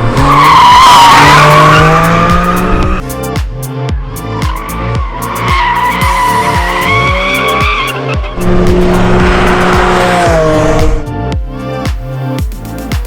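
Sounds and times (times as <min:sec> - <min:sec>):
high-revving car engine: 0:00.0 - 0:03.0, 0:04.6 - 0:11.0
electronic music: 0:00.0 - 0:13.0.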